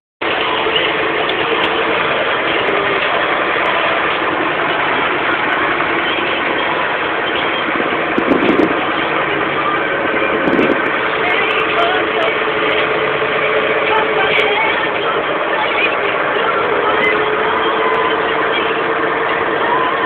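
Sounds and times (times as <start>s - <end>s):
harvester engine running: 0.2s - 20.0s.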